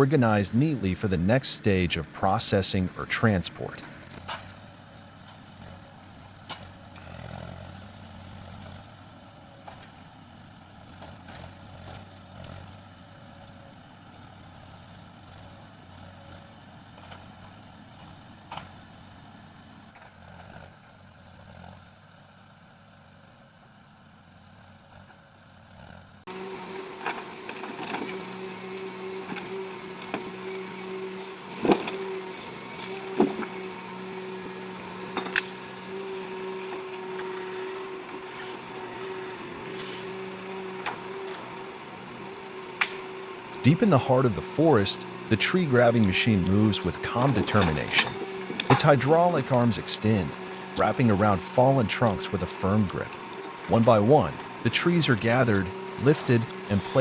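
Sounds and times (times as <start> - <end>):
machine engine droning: 0.0 - 57.0
knocks and clanks: 26.5 - 33.7.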